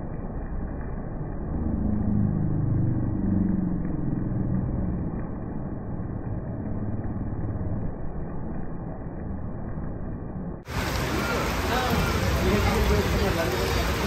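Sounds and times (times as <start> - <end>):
vehicle engine passing on wet road: 1.2 - 10.0, 10.6 - 14.0
heavy rain hissing: 10.6 - 14.0.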